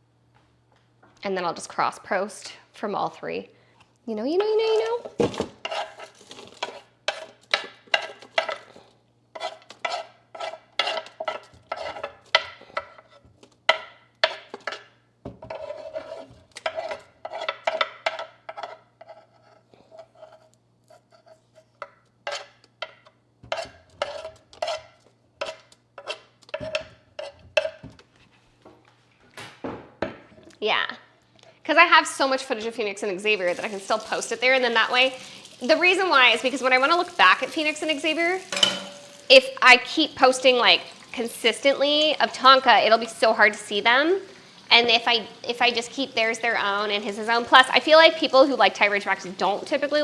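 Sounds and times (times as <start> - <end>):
knife chopping on cutting board: 5.2 - 8.7.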